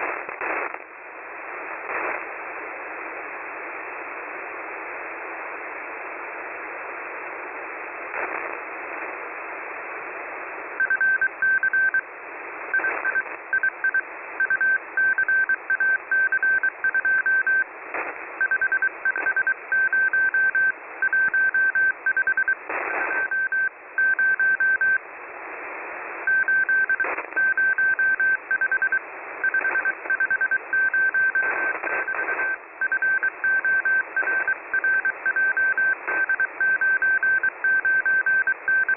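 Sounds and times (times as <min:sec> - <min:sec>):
radio receiver hiss: 0:00.0 - 0:38.9
static crackles: 0:00.0 - 0:38.9
morse code beeps: 0:10.8 - 0:12.0, 0:12.8 - 0:17.6, 0:18.4 - 0:25.0, 0:26.3 - 0:38.9.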